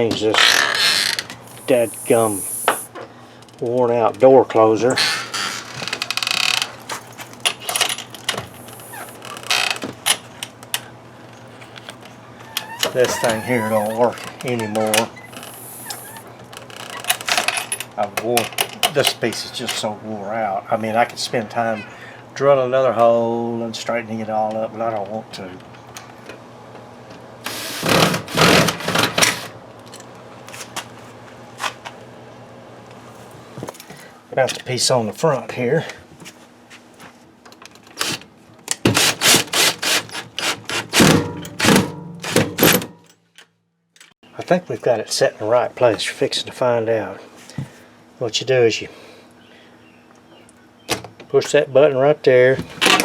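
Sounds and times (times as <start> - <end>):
screen door creaking: 0.2 - 2.9, 4.9 - 10.2, 11.6 - 17.7
scraping rubs: 11.6 - 14.1.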